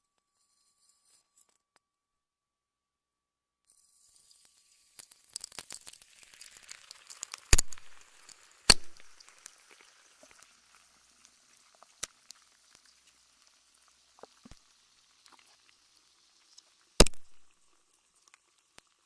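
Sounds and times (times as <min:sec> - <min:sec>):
crackling hissing noise: 0:03.7 - 0:19.0
loud sharp cracks: 0:07.5 - 0:08.0, 0:08.7 - 0:09.2, 0:17.0 - 0:17.4.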